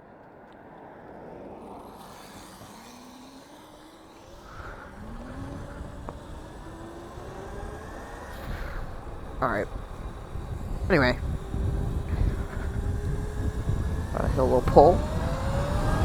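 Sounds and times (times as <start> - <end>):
electric motor whining: 1.4 - 16.0
low rumble: 3.4 - 16.0.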